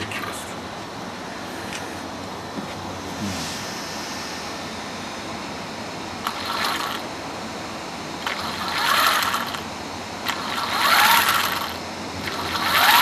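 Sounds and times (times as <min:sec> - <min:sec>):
toy car motor whirring: 0:06.2 - 0:07.0, 0:08.2 - 0:13.0.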